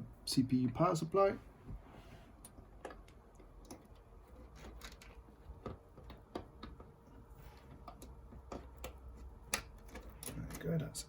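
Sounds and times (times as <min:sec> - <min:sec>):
small plastic clicks and taps: 0:07.7 - 0:10.3.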